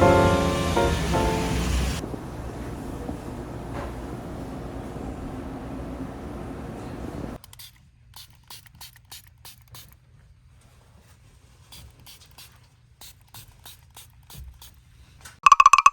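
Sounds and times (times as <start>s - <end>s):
low steady hum: 0.0s - 7.4s.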